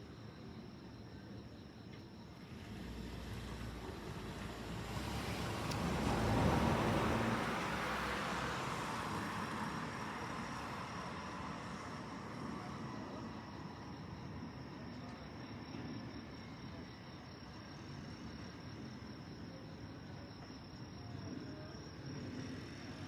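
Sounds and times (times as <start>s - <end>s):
vehicle passing by: 2.4s - 12.6s.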